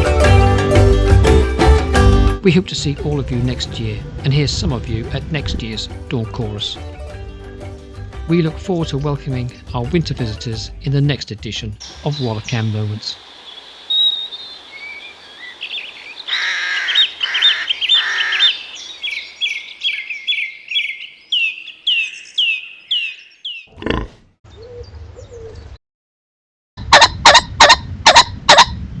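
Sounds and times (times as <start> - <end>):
songbird singing: 11.8 - 23.8, 24.5 - 25.8
bird harsh calls: 11.8 - 25.6.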